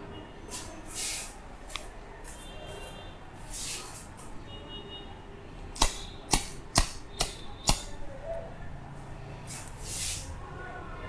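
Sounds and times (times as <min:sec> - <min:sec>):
sharp cracks: 0:05.7 - 0:08.1.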